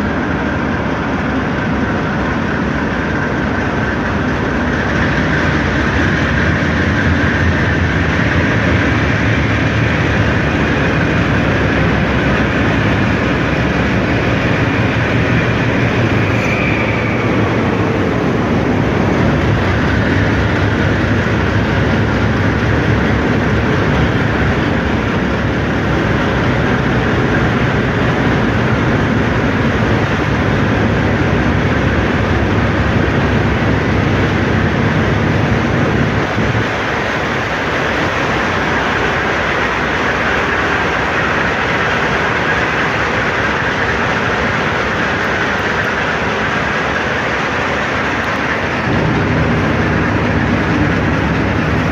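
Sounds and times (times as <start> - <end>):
train wheels rumbling on track: 0.0 - 51.9
wheel squeal: 1.8 - 24.7.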